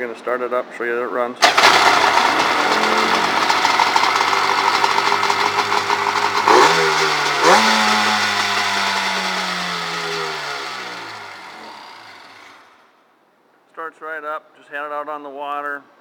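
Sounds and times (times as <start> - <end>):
two-stroke engine revving: 1.4 - 12.8.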